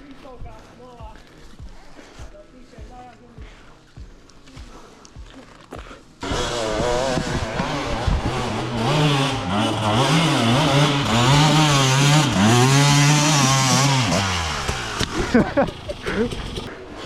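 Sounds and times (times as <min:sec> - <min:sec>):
motocross bike engine revving: 0:06.2 - 0:17.0.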